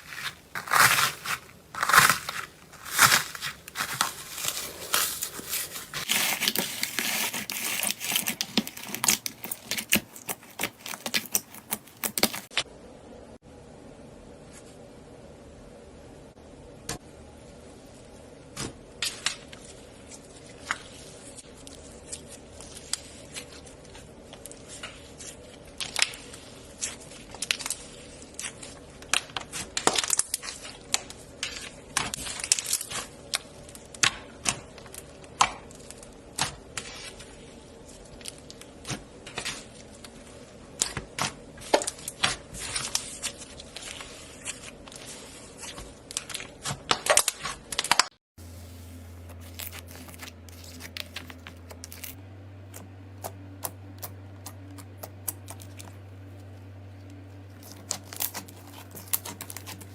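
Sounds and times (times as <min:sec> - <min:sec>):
slime crackling and popping: 0:00.0 - 0:12.5, 0:25.7 - 0:37.0, 0:49.2 - 0:56.5, 0:57.1 - 0:59.9.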